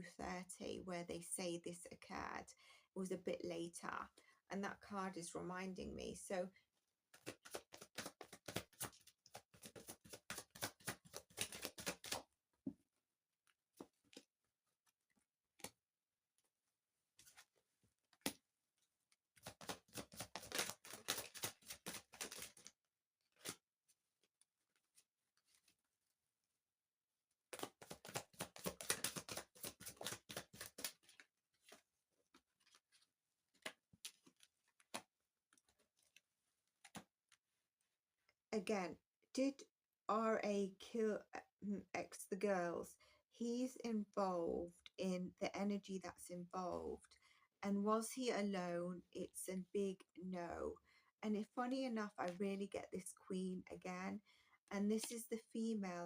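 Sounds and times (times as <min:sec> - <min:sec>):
cards tapping: 0:07.1 - 0:12.2, 0:19.4 - 0:22.7, 0:27.5 - 0:31.8
cards being shuffled: 0:07.1 - 0:12.3, 0:19.4 - 0:22.7, 0:23.3 - 0:23.6, 0:27.5 - 0:36.2, 0:36.8 - 0:37.4.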